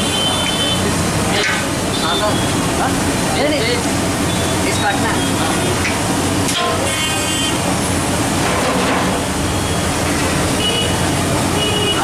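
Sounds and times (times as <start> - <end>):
vehicle horns tooting: 0.0 - 0.8, 6.8 - 7.7, 10.5 - 12.0
street traffic: 0.0 - 12.0.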